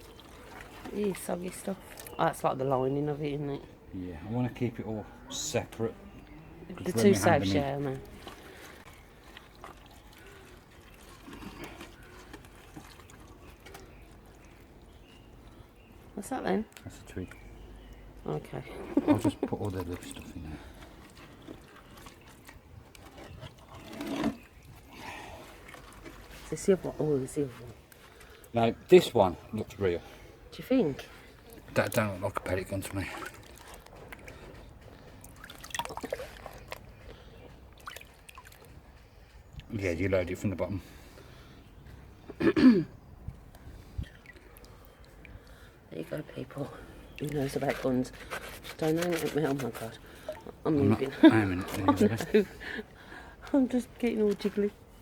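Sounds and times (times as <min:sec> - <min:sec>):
wet debris rustling and clicking: 0:00.0 - 0:02.4, 0:07.8 - 0:16.0, 0:19.1 - 0:26.8, 0:31.4 - 0:39.1, 0:47.1 - 0:52.5
water dripping and trickling: 0:00.0 - 0:03.2, 0:07.4 - 0:18.3, 0:19.0 - 0:26.7, 0:31.4 - 0:40.4, 0:43.5 - 0:54.7.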